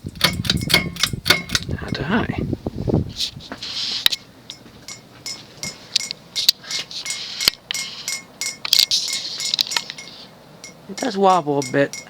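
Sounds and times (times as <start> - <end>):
ceiling fan air rush: 0.0 - 12.0
pull chains clinking on glass: 0.2 - 2.0, 7.7 - 12.0.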